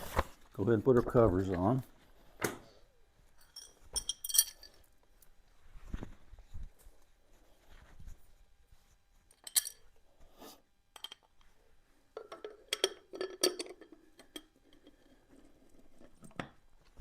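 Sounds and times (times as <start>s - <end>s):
metal tools clinking: 3.4s - 5.0s, 9.3s - 10.0s, 12.2s - 15.0s.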